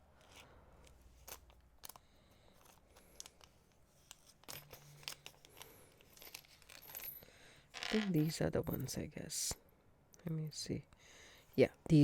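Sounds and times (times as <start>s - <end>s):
small packets clicking and rustling: 0.2s - 7.2s.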